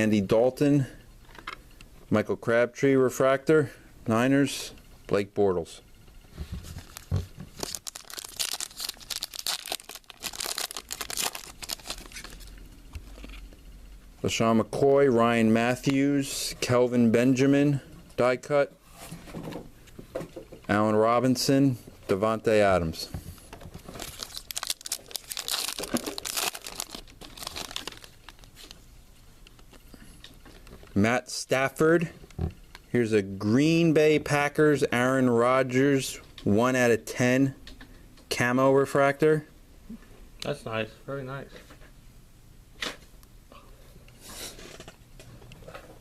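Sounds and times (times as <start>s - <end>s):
wrapper handling: 6.7s - 13.4s, 23.8s - 28.9s
wrapper tearing and crinkling: 6.8s - 12.5s, 23.8s - 28.8s.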